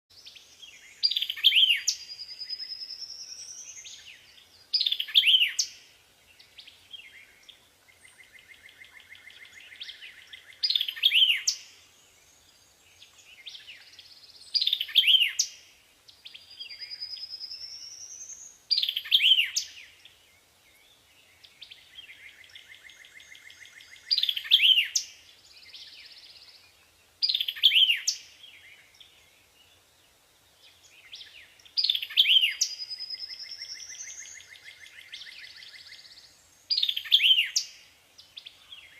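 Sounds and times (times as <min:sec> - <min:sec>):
bird chirping and trilling: 0:01.0 - 0:04.1, 0:04.7 - 0:05.8, 0:09.4 - 0:11.8, 0:14.5 - 0:15.6, 0:16.5 - 0:19.8, 0:27.2 - 0:28.3, 0:31.7 - 0:37.8.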